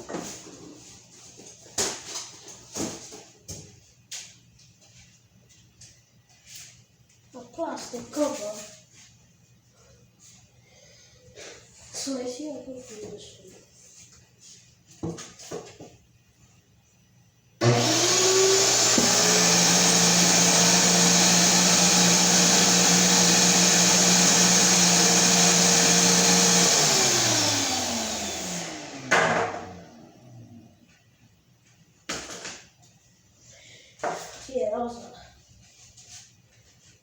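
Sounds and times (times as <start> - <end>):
vacuum cleaner motor whining: 17.6 - 30.8.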